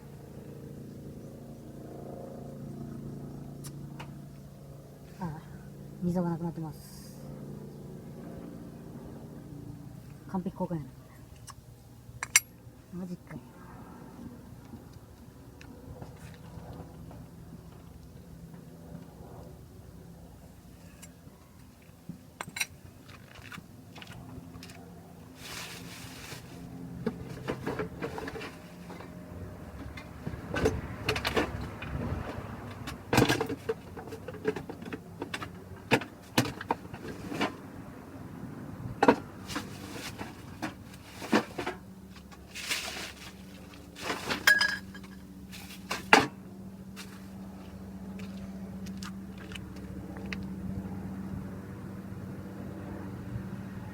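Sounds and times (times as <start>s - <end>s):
metal tools clinking and knocking: 12.2s - 12.5s, 22.4s - 23.5s, 44.0s - 45.3s.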